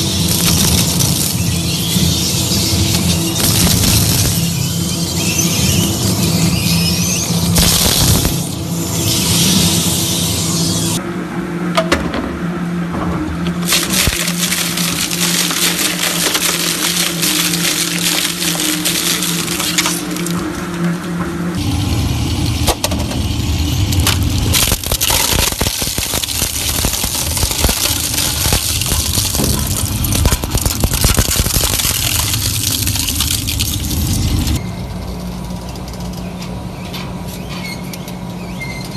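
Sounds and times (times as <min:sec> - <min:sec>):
material cracking and crunching: 0:00.0 - 0:01.6, 0:02.9 - 0:04.5, 0:07.5 - 0:08.4, 0:13.5 - 0:21.2, 0:23.9 - 0:34.6
machine hum: 0:00.0 - 0:36.7.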